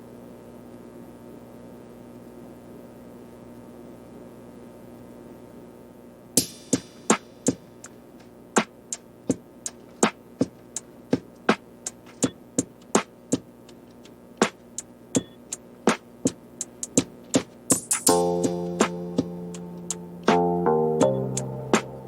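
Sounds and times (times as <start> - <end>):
electronic percussion music: 6.4 - 22.0.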